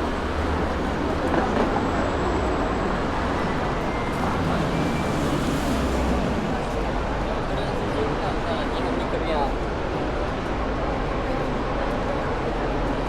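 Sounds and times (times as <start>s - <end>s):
road traffic rumble: 0.0s - 13.0s.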